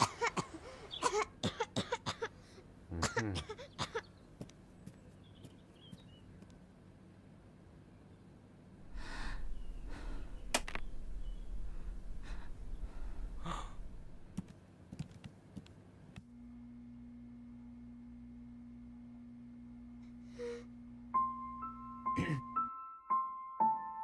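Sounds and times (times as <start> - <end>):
steady low hum: 0.0 - 22.5
breathy sighs: 8.9 - 10.5, 11.7 - 14.0, 20.2 - 20.7.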